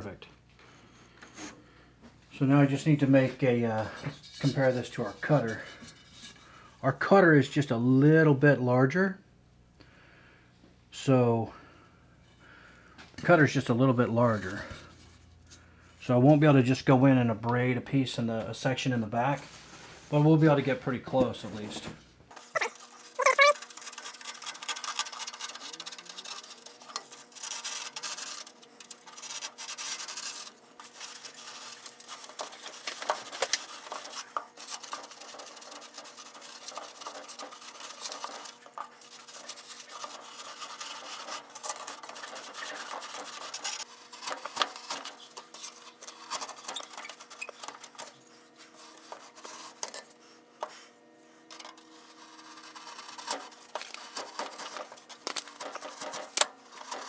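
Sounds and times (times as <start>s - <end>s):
hand scraping insulation board: 3.8s - 6.4s, 22.3s - 57.0s.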